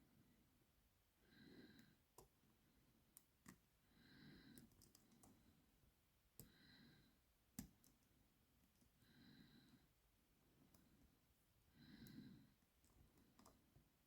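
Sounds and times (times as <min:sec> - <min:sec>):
slow breathing: 0:03.8 - 0:05.6, 0:06.4 - 0:07.2, 0:09.0 - 0:11.1, 0:11.7 - 0:13.5.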